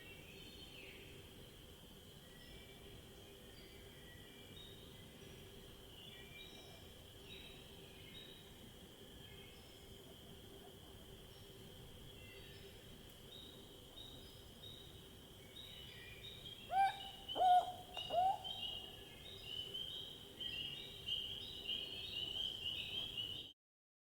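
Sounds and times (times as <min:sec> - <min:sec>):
owl calling: 0:16.7 - 0:19.0.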